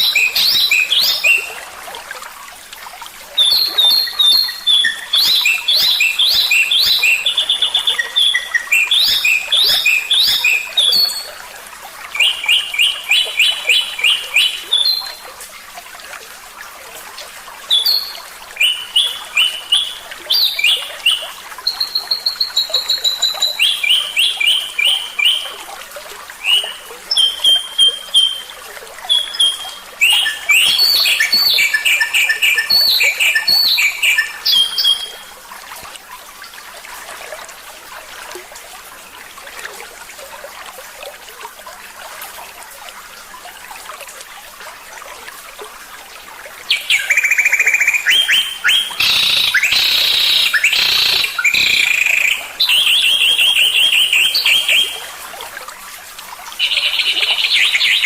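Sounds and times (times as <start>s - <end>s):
songbird trills and chirps: 0.0s - 1.6s, 3.4s - 11.3s, 12.2s - 15.2s, 17.7s - 25.6s, 26.4s - 35.3s, 46.7s - 55.1s, 56.6s - 58.0s.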